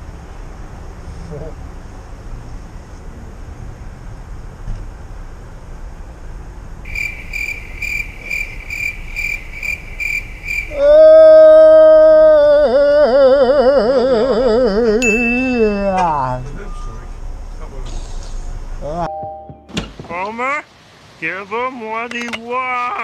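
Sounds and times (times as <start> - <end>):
crickets chirping: 6.8 - 17.6
loud drawn-out wavering tone: 12.6 - 17.0.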